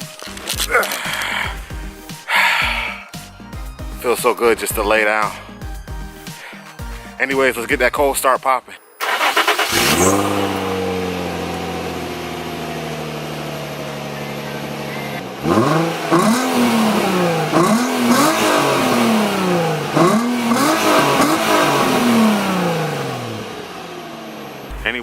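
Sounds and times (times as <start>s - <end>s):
car engine idling and revving: 8.8s - 25.0s.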